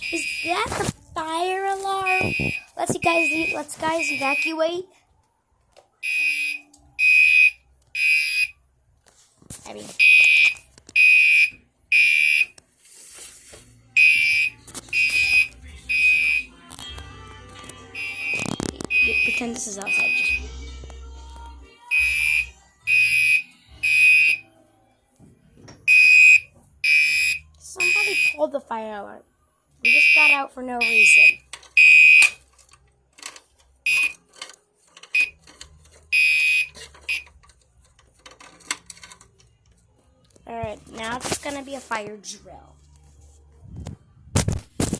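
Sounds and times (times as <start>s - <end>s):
fire alarm horn beeps: 0.0s - 0.6s, 2.0s - 4.6s, 6.0s - 8.6s, 10.0s - 12.5s, 14.0s - 16.5s, 18.0s - 20.4s, 21.9s - 24.4s, 25.9s - 28.4s, 29.8s - 32.4s, 33.8s - 34.2s, 35.1s - 35.4s, 36.1s - 37.3s
knocks and handling noise: 31.4s - 42.1s.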